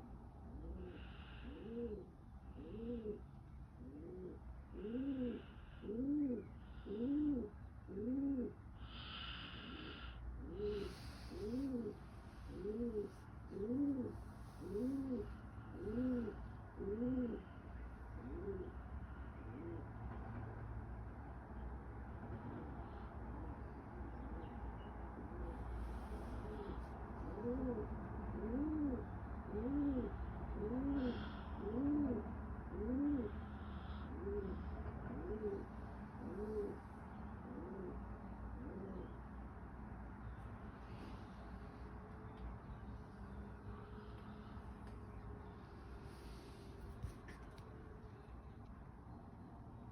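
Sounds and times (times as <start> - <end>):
pigeon cooing: 0.5 - 18.8, 25.2 - 39.3.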